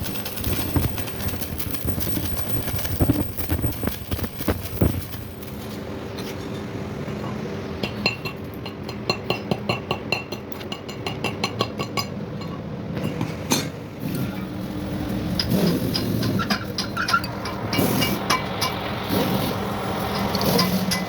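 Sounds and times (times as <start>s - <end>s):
metal clicking and clinking: 0.0s - 5.7s
steady machine hum: 0.0s - 7.8s.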